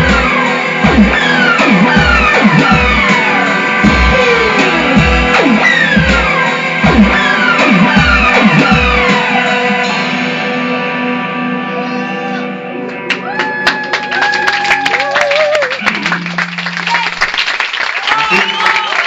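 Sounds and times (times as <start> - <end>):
live rock band: 0.0 - 14.0
audience clapping: 12.9 - 19.0.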